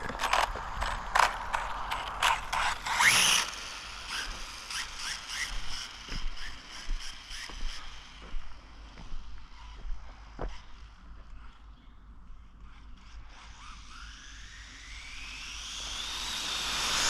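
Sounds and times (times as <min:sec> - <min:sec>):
sharp clicks and scrapes: 0:00.0 - 0:05.5
toy car electric motor whining: 0:00.0 - 0:08.2, 0:13.0 - 0:17.0.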